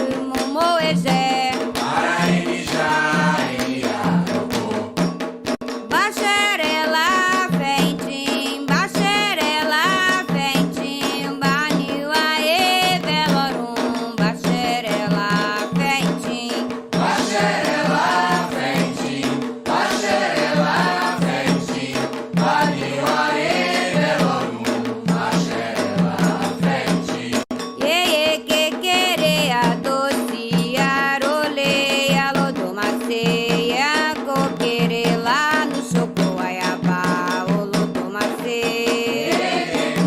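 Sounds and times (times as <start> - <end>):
voices singing a chant: 0.0 - 5.1, 17.0 - 27.5, 38.7 - 40.0
hand drums: 0.0 - 40.0.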